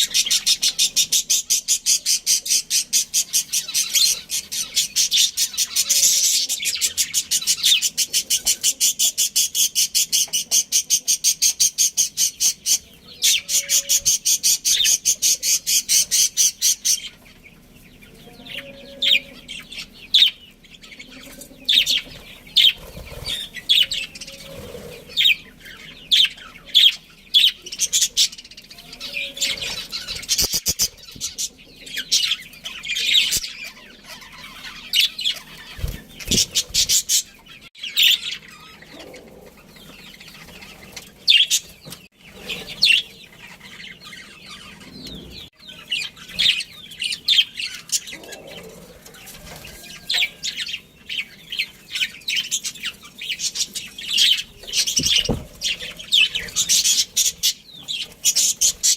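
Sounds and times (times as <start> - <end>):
budgerigars chirping: 0.0 - 48.7, 49.6 - 58.9.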